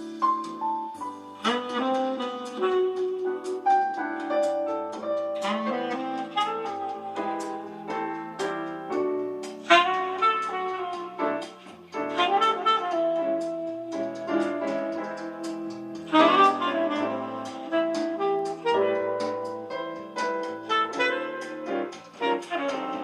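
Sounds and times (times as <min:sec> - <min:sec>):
jazz saxophone melody: 0:00.0 - 0:23.0.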